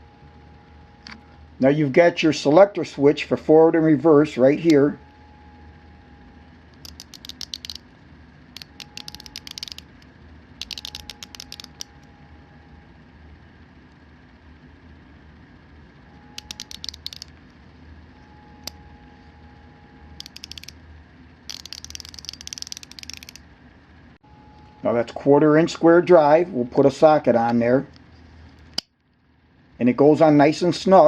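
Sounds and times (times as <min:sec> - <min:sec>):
ratchet clicking: 0:06.8 - 0:07.8, 0:08.6 - 0:10.0, 0:10.6 - 0:11.9, 0:16.4 - 0:17.3, 0:20.2 - 0:20.7, 0:21.5 - 0:23.4.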